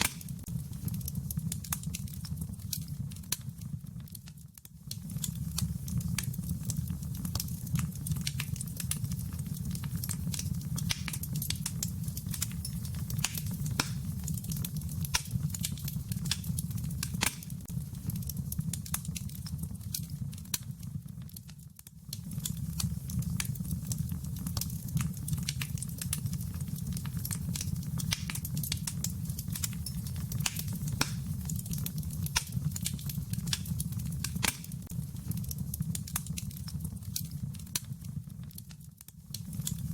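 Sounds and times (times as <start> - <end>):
fire crackling and popping: 0.0 - 39.9
low rumble of flames: 0.0 - 39.9.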